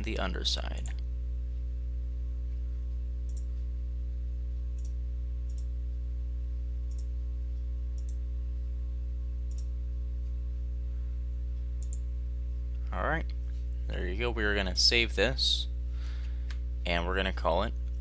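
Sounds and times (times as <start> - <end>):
low electrical hum: 0.0 - 18.0
computer mouse clicking: 3.3 - 3.5, 4.8 - 5.7, 6.9 - 7.1, 8.0 - 8.2, 9.5 - 9.7, 11.8 - 12.0.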